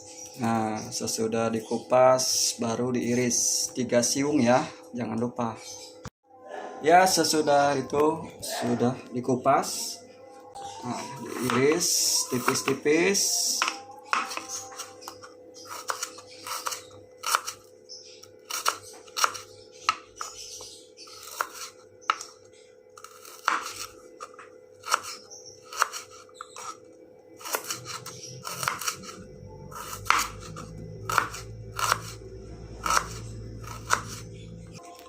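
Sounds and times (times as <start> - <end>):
knife chopping on cutting board: 11.3 - 12.9, 13.5 - 17.6, 21.2 - 22.3, 23.0 - 26.8, 27.4 - 32.2, 32.8 - 34.3.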